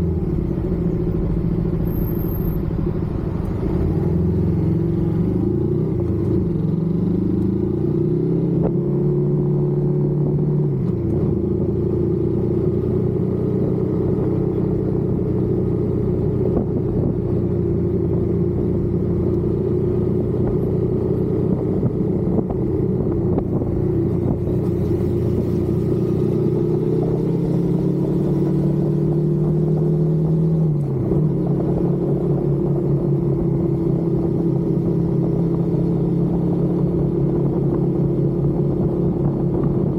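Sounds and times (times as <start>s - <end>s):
motorcycle engine running: 0.0s - 8.7s, 11.3s - 39.9s.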